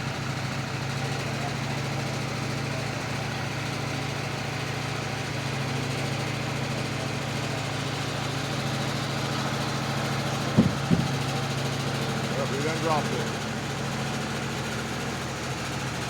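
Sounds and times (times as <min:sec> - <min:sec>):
engine running steadily: 0:00.0 - 0:16.0.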